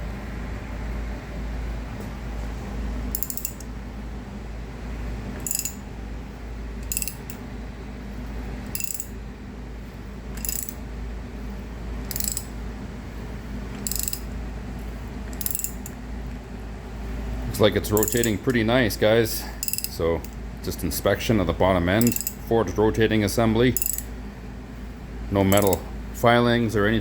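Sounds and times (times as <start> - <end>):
steady low hum: 0.0 - 27.0
ratchet pawl clicking: 3.2 - 3.7, 5.4 - 5.8, 6.8 - 7.4, 8.7 - 9.1, 10.4 - 10.8, 12.1 - 12.6, 13.8 - 14.3, 15.3 - 16.0, 18.0 - 18.5, 19.6 - 20.4, 22.0 - 22.4, 23.8 - 24.1, 25.5 - 25.8.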